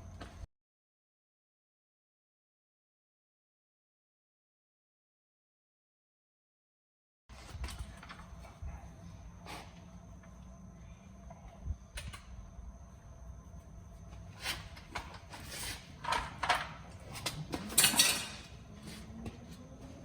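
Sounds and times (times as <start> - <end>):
steady low hum: 7.3 - 20.0
metal tools clanking: 14.8 - 18.6.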